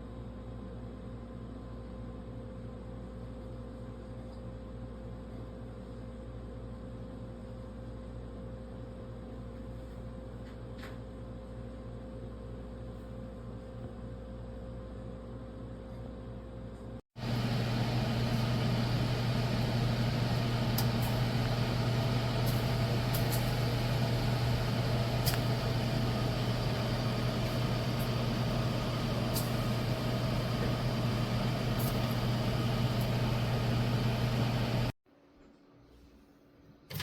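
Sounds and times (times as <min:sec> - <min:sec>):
low hum: 0:17.2 - 0:35.0
oven fan whirring: 0:17.2 - 0:35.0.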